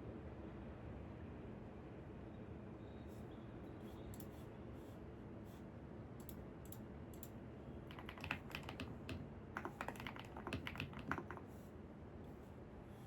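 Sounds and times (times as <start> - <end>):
computer keyboard typing: 7.9 - 11.5.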